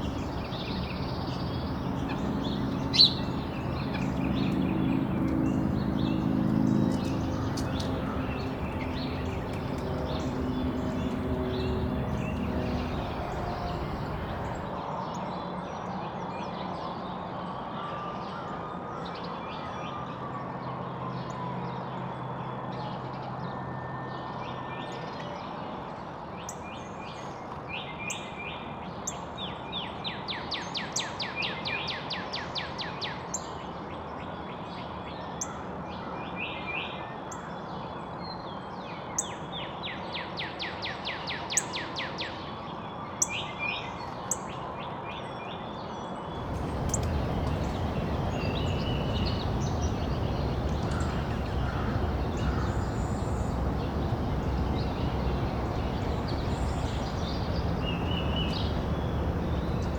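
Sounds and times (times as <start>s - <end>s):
bird rapid trill: 0.0s - 6.2s, 46.4s - 59.9s
songbirds singing and chirping: 0.0s - 14.8s, 46.3s - 59.9s
outdoor background noise: 0.0s - 14.9s, 46.3s - 59.9s.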